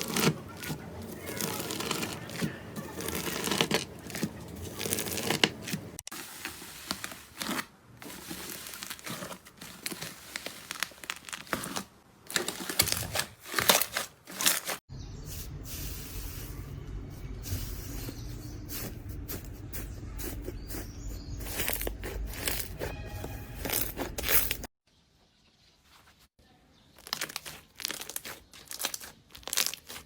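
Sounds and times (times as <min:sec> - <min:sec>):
slime crackling and popping: 0:00.0 - 0:05.6, 0:27.0 - 0:30.0.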